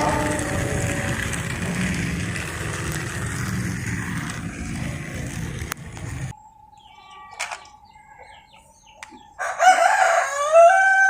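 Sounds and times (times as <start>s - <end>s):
train whistle chord: 0.0s - 1.6s
train rumbling: 0.0s - 6.3s.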